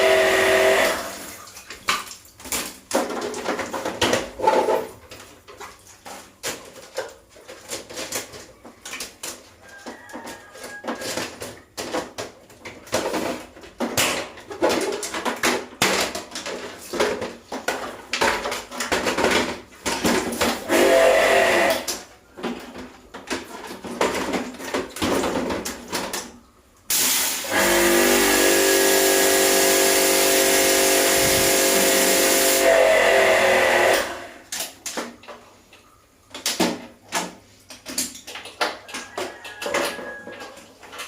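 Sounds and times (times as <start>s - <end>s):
hard objects clattering and knocking: 1.9s - 20.8s, 21.9s - 26.4s, 34.5s - 41.0s.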